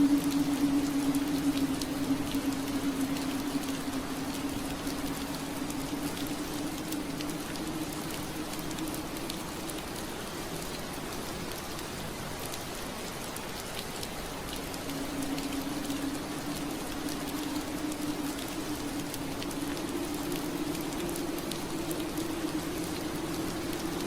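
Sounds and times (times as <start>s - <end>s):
low steady hum: 0.0s - 12.3s
rain on window glass: 0.0s - 24.0s.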